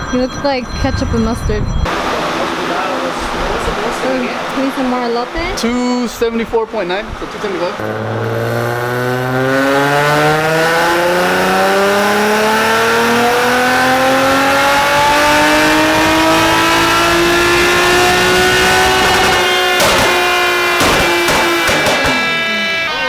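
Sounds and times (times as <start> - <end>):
car engine at full throttle: 1.8 - 23.0
exhaust pops: 1.8 - 23.0.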